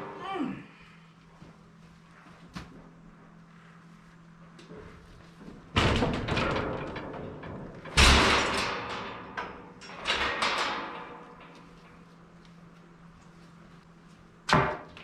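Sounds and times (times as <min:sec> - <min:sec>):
metal gates clanging: 0:05.8 - 0:12.1.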